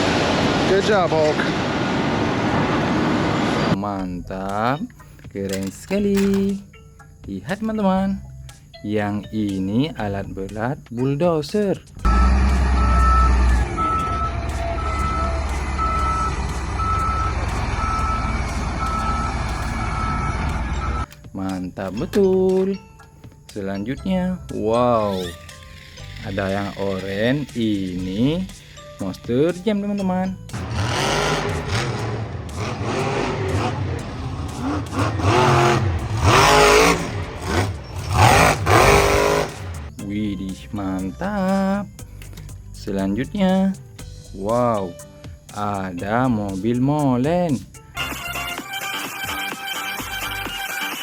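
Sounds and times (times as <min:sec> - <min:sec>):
deep engine rumble: 0:11.9 - 0:21.1, 0:30.3 - 0:40.1
reversing beeper beeping: 0:12.1 - 0:21.1.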